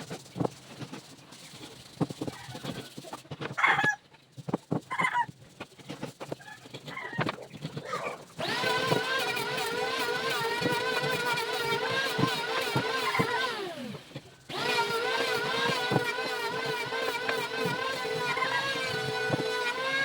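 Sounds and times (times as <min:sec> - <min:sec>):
power tool motor whining: 0:08.4 - 0:20.0.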